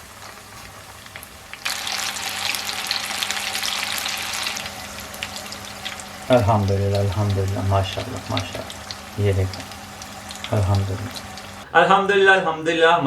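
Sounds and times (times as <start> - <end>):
chicken deep-frying in oil: 0.0 - 11.7.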